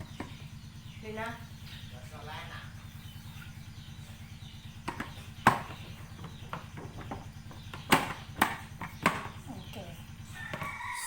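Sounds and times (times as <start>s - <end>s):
steady low hum: 0.0s - 11.0s
plastic parts knocking together: 4.8s - 9.4s.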